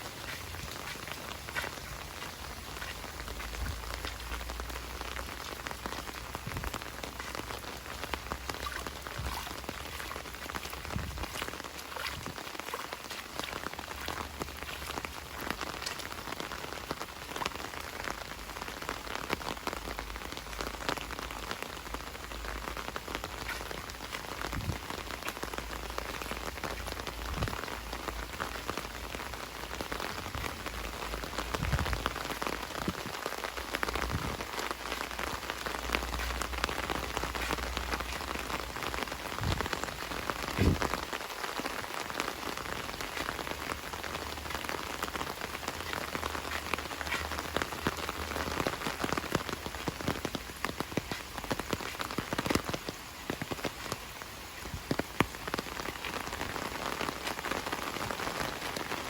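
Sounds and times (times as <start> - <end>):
heavy rain falling: 0.0 - 59.0
dull low thumps: 8.2 - 11.5, 39.3 - 41.0.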